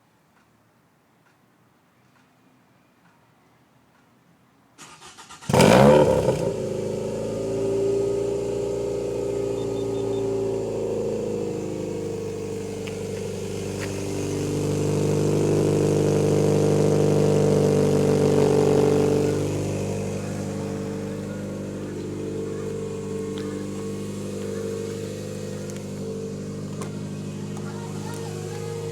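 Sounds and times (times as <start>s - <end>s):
engine starter cranking: 4.8s - 5.8s
car engine idling: 5.5s - 28.9s.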